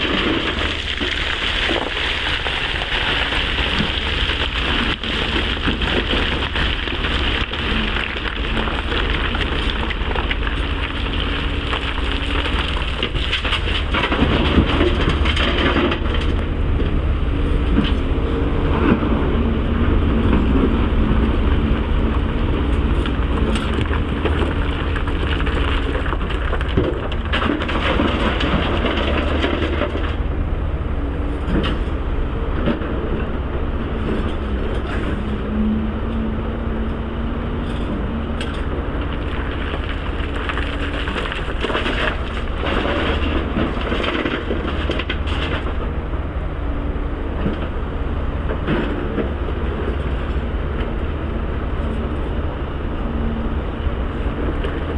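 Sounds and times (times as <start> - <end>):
rock and dirt scraping: 0.0 - 16.4, 20.2 - 30.5, 31.1 - 46.2
excavator diesel engine: 0.0 - 54.9.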